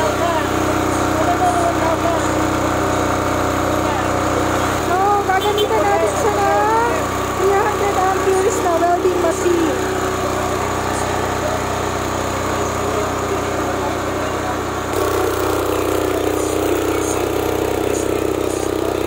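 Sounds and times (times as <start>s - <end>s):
diesel generator running: 0.0s - 19.0s.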